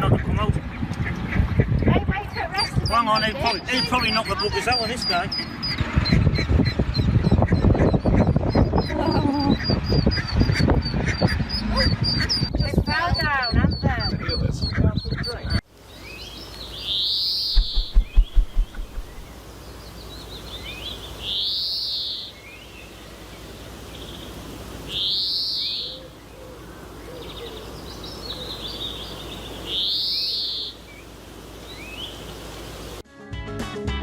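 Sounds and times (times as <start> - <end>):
bird calling loudly: 0.0 - 33.0
low knocks: 17.5 - 19.3.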